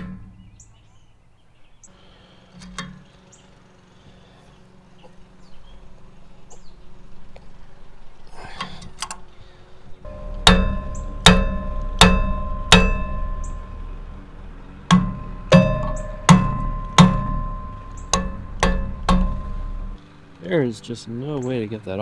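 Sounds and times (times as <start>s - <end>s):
hammer blows ringing on metal: 10.1s - 20.0s.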